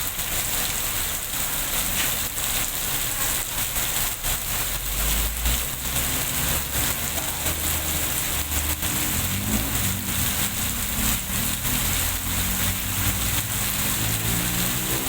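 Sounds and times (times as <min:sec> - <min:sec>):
heavy rain falling: 0:00.0 - 0:15.0
low steady engine hum: 0:04.7 - 0:15.0.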